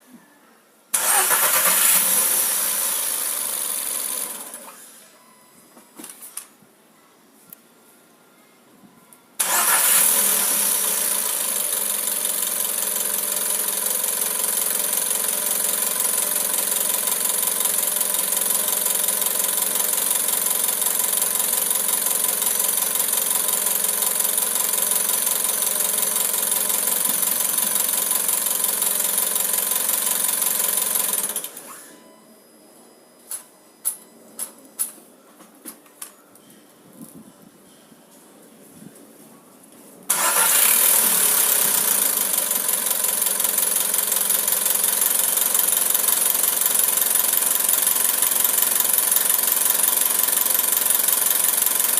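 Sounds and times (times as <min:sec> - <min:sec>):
car engine starting: 0:00.9 - 0:04.8, 0:09.4 - 0:12.8, 0:40.1 - 0:46.8.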